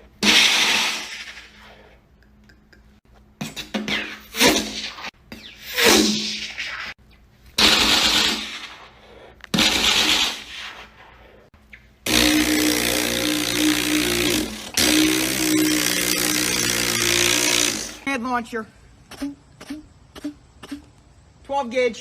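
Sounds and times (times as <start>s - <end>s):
person making mouth gun sounds: 7.6s - 8.9s, 12.0s - 18.0s, 19.1s - 21.0s.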